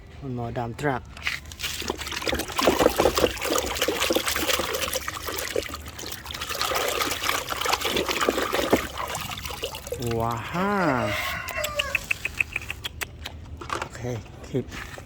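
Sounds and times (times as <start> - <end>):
water pouring and trickling: 1.0 - 12.0.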